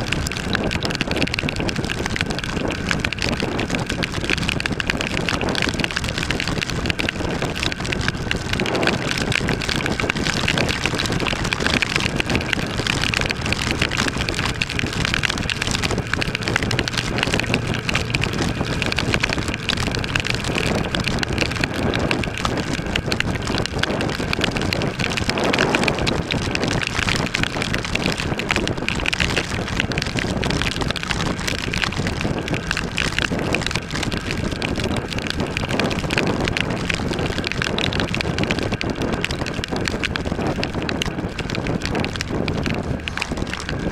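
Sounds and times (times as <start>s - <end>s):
heavy rain hitting microphone: 0.0s - 43.9s
wind rushing over microphone: 0.0s - 43.9s
motorcycle engine running: 8.3s - 27.8s.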